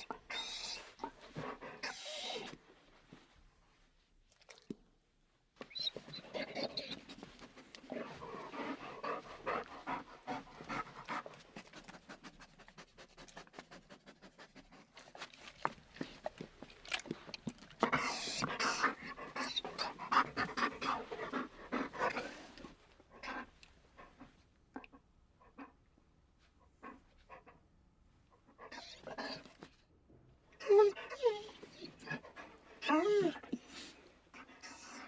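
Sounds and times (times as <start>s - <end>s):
dog panting: 6.0s - 24.4s, 30.6s - 35.0s.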